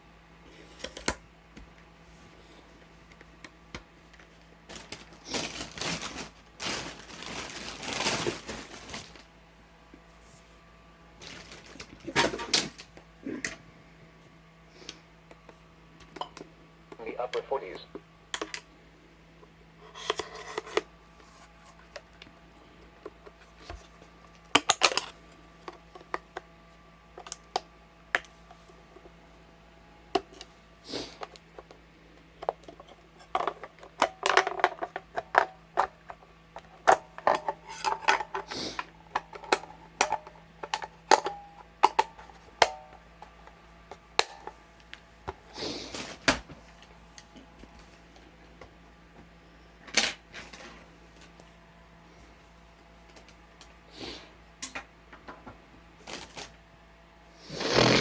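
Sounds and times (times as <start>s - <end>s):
small hard objects clattering: 4.7s - 9.3s.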